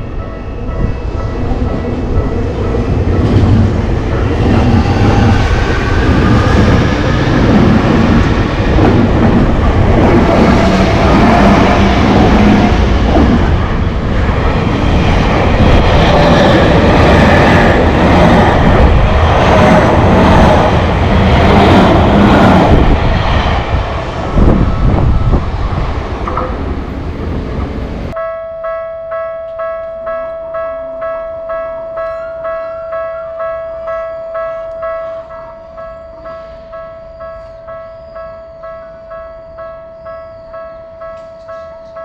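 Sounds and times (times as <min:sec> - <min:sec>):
train wheels rumbling on rail: 0:00.0 - 0:28.2.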